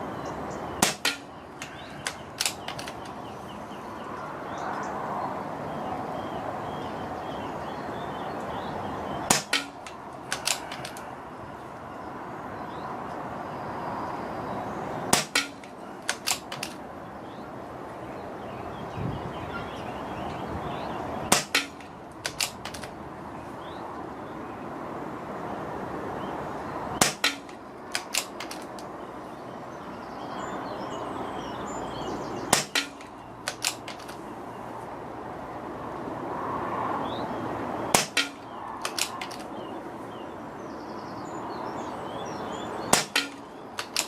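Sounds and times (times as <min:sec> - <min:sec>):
air rifle shots: 0:00.8 - 0:03.2, 0:09.3 - 0:11.0, 0:15.1 - 0:16.8, 0:21.3 - 0:22.9, 0:27.0 - 0:28.7, 0:32.5 - 0:34.2, 0:37.9 - 0:39.5, 0:42.9 - 0:44.0
small clicks: 0:00.8 - 0:03.2, 0:09.4 - 0:11.1, 0:15.2 - 0:16.8, 0:21.3 - 0:23.0, 0:27.0 - 0:28.9, 0:32.5 - 0:34.2, 0:38.0 - 0:39.5, 0:42.9 - 0:44.0
wind noise: 0:18.6 - 0:23.1.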